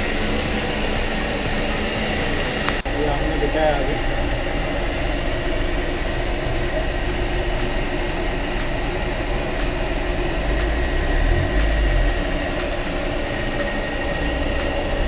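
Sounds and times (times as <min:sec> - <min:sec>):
machinery hum: 0:00.0 - 0:15.0.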